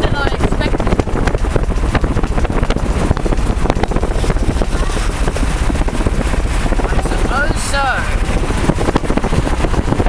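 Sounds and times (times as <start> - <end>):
wind buffeting microphone: 0.0 - 10.0.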